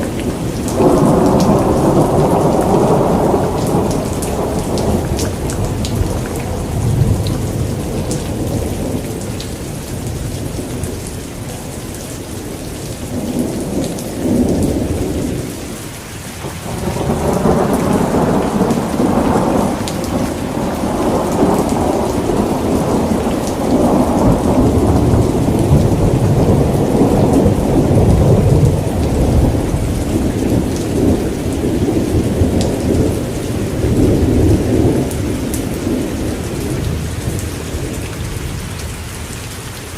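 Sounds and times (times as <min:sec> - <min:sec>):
rolling thunder: 0:00.0 - 0:09.3, 0:16.4 - 0:38.8
rain falling: 0:00.0 - 0:39.9.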